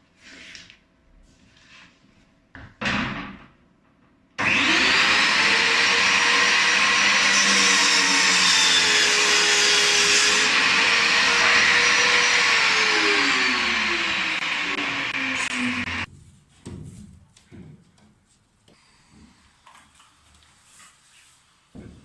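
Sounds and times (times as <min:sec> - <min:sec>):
power tool motor whining: 0:04.4 - 0:16.1.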